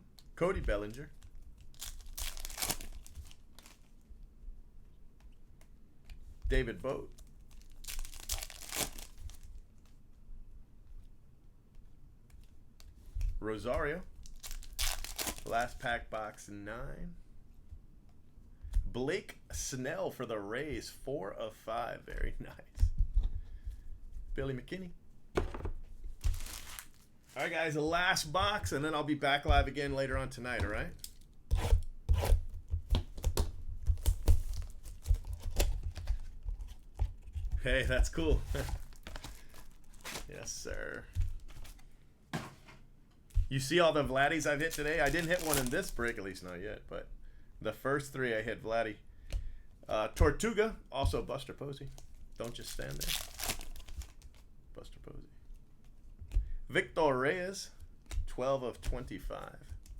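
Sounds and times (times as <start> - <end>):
card packs rustling and crinkling: 0.1 - 4.0, 6.7 - 9.9, 14.2 - 15.9, 25.4 - 31.4, 32.9 - 42.0, 43.4 - 46.7, 51.9 - 54.5
box knocking on table: 25.4 - 25.8.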